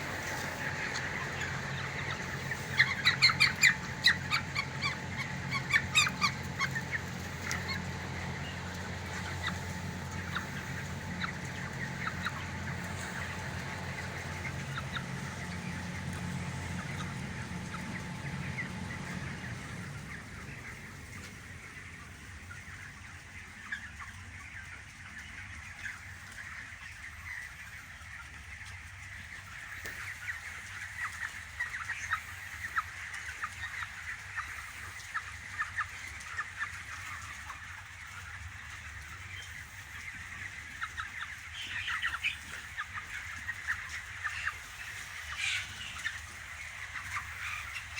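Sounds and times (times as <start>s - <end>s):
steady low hum: 0.0s - 23.0s
chicks peeping and chirping: 0.0s - 47.9s.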